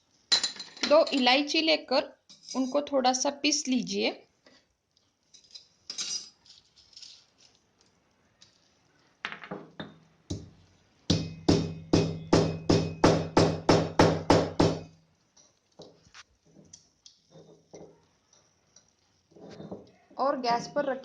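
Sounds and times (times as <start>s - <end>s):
pestle striking mortar: 11.1s - 14.9s.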